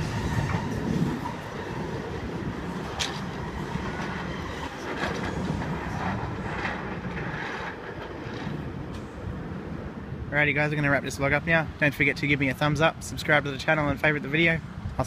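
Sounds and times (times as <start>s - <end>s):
train wheels rumbling on rail: 0.0s - 15.0s
wheel clicks over rail joints: 2.8s - 9.1s.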